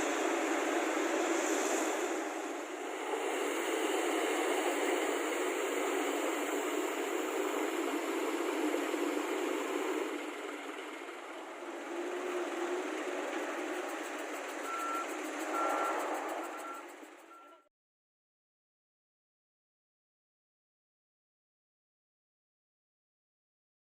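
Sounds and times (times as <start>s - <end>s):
heavy construction machinery drone: 0.0s - 17.6s
backup alarm beeping: 14.6s - 17.6s.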